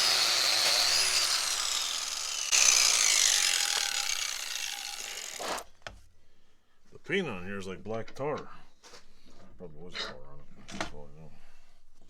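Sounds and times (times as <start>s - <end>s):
power drill scrubbing metal: 0.0s - 5.7s.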